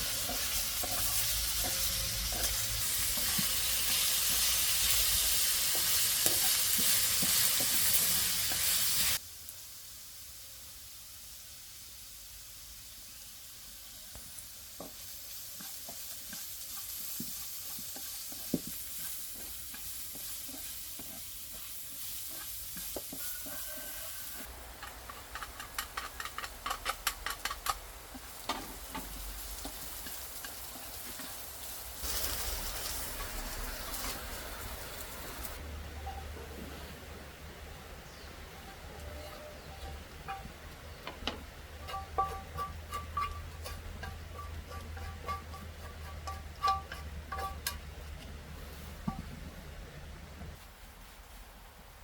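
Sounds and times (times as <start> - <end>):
food sizzling in a pan: 0.0 - 25.4, 27.4 - 35.6
utensil clicking and scraping: 15.6 - 31.4.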